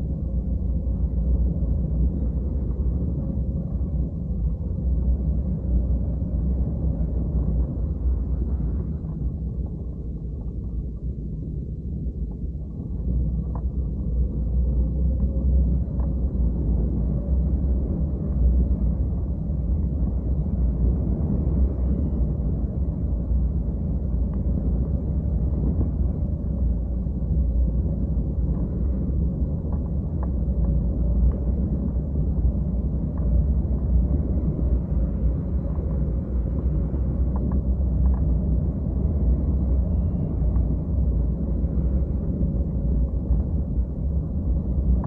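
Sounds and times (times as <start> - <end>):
wind buffeting microphone: 0.0 - 45.0
faint clicks: 37.2 - 38.4.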